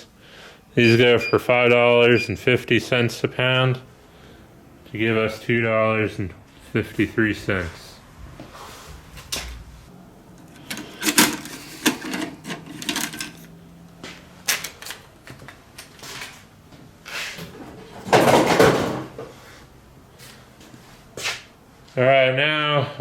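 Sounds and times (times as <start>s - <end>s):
circuit boards clicking and clattering: 10.4s - 13.5s, 14.4s - 16.4s.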